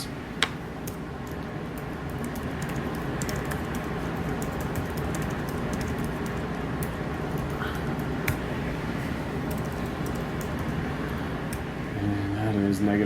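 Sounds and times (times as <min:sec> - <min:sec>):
steady low hum: 0:00.0 - 0:13.0
calculator keys clicking: 0:02.0 - 0:08.4.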